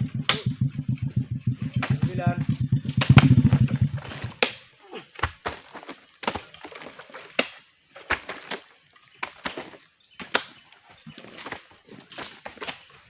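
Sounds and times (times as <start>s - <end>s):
irregular knocks and thuds: 0.0s - 4.4s.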